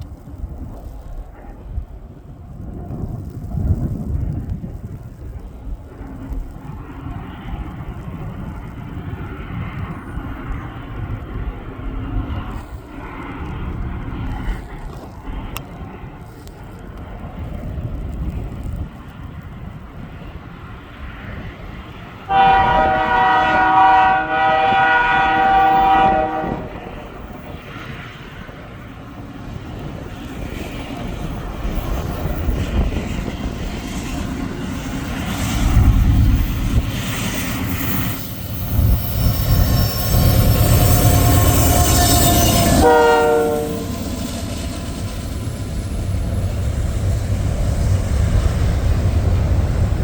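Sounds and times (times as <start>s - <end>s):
train rumbling: 0.0s - 50.0s
train air horn blasts: 22.3s - 26.8s, 40.7s - 44.0s.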